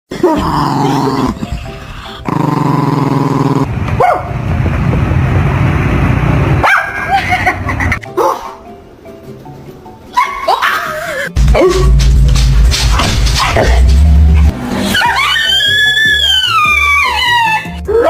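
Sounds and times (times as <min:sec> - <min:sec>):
dog barking and growling: 0:00.1 - 0:04.3, 0:06.6 - 0:07.1, 0:08.1 - 0:08.6, 0:11.4 - 0:15.5
dog yelping: 0:06.6 - 0:07.1, 0:10.1 - 0:11.8.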